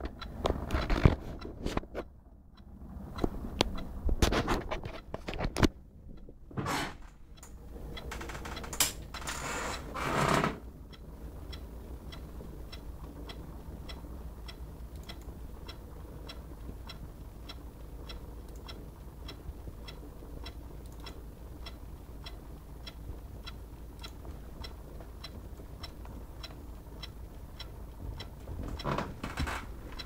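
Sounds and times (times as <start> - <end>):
laptop steady ticking: 2.6 - 4.0, 7.3 - 9.7, 10.7 - 30.0.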